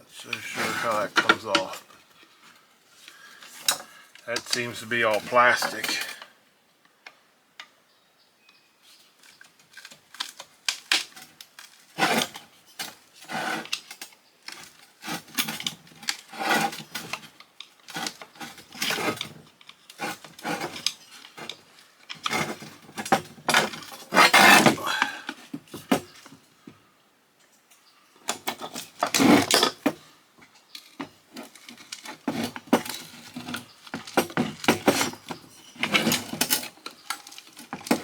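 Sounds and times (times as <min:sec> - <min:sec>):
hand tools clinking on metal: 0:03.7 - 0:06.2.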